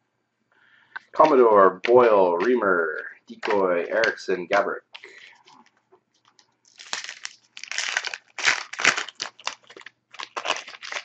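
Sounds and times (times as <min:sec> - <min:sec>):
plastic wrapper crinkling and tearing: 0:05.0 - 0:11.0.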